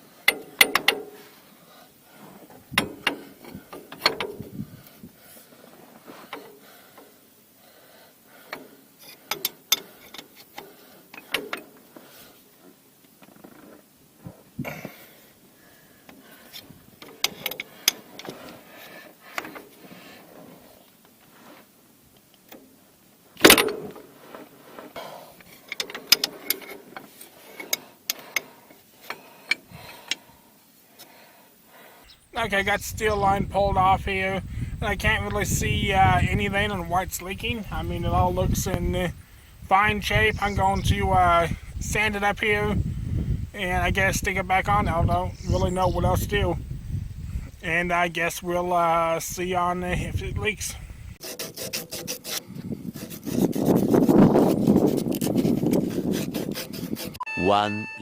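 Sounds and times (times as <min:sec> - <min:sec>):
hand tools on metal fittings: 0:00.0 - 0:01.4, 0:02.4 - 0:04.8, 0:08.4 - 0:11.8, 0:16.4 - 0:20.0, 0:23.4 - 0:30.2, 0:32.0 - 0:46.5
quiet shuffling: 0:32.1 - 0:51.2.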